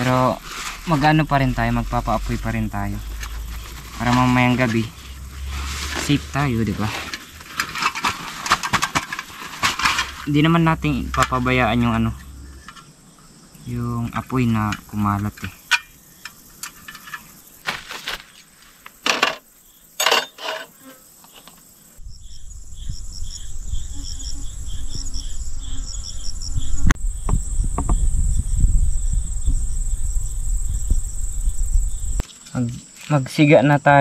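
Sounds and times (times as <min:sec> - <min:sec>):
loud low rumble: 0:00.0 - 0:07.6, 0:10.0 - 0:12.6
crickets chirping: 0:00.0 - 0:34.0
high insect whine: 0:00.0 - 0:34.0
scattered clicks and rustles: 0:06.7 - 0:10.3.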